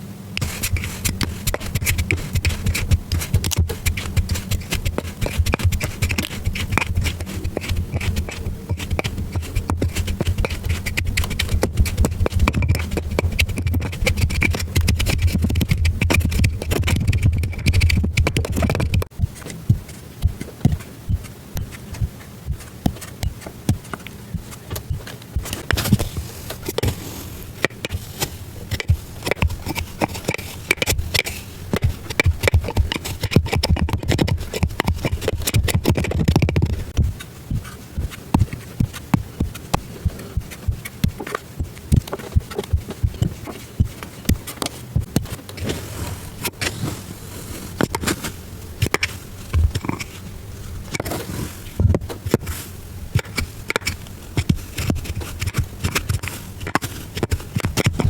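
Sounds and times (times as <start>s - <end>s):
low hum: 0.0s - 55.8s
sand crackling and crunching: 25.4s - 35.4s, 45.6s - 58.0s.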